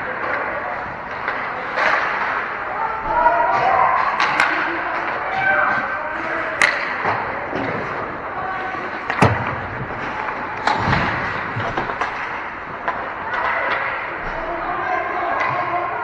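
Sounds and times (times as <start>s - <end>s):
hockey sticks and puck clacking: 0.0s - 16.0s
thud: 9.1s - 12.2s.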